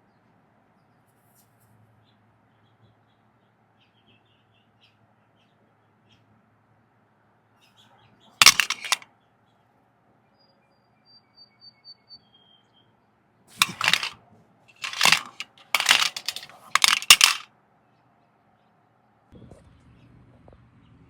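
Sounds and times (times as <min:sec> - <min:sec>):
small hard objects rattling: 0:08.4 - 0:09.0, 0:13.6 - 0:14.2, 0:14.8 - 0:17.5.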